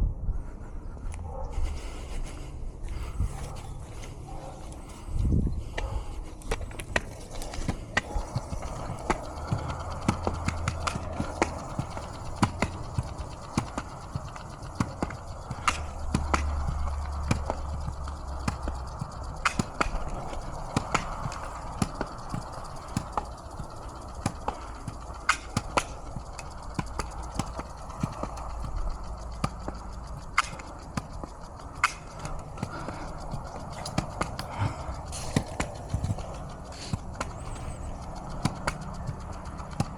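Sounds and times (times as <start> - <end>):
footsteps on pavement: 1.1 - 39.9.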